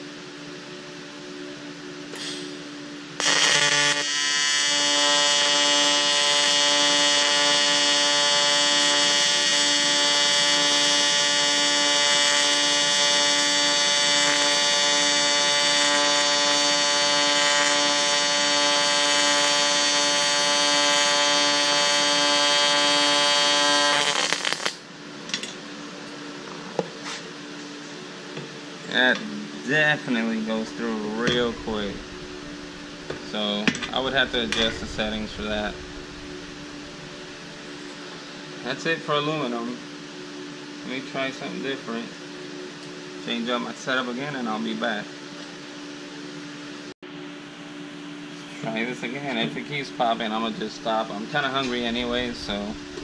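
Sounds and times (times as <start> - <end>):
welding arc buzzing: 3.2 - 24.8, 30.4 - 38.0, 51.4 - 53.0.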